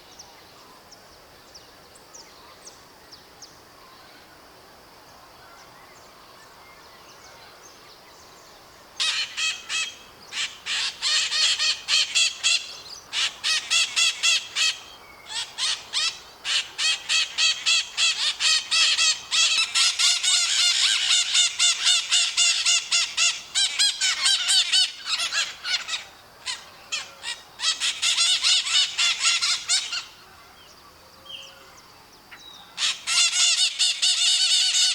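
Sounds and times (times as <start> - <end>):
parrots screeching: 9.0 - 30.1, 32.8 - 34.9.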